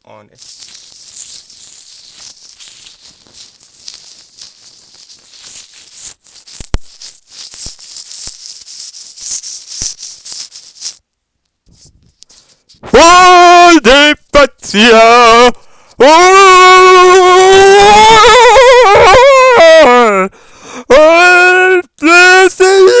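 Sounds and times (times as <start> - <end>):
hair rubbing on microphone: 0.3 - 11.0, 11.6 - 13.0.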